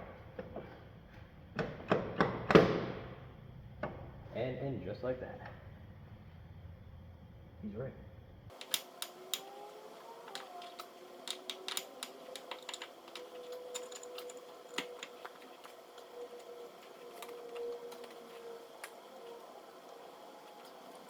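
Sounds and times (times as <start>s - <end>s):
faint steady hum: 3.1s - 21.0s
tools and parts clicking and tapping: 8.5s - 21.0s.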